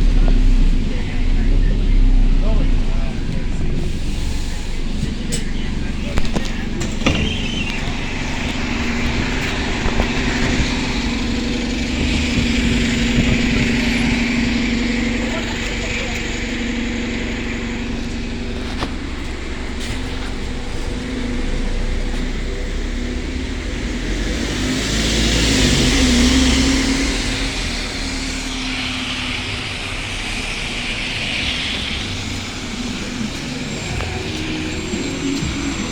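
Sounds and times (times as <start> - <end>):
bus diesel engine droning: 0.0 - 35.9
hissy rush: 24.7 - 35.9.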